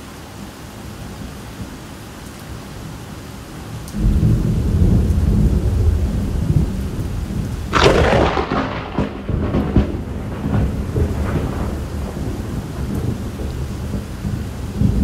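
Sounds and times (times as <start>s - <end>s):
steady rain hissing: 0.0s - 15.0s
sharp thunder crack: 4.0s - 15.0s
thunder rumble: 4.0s - 15.0s.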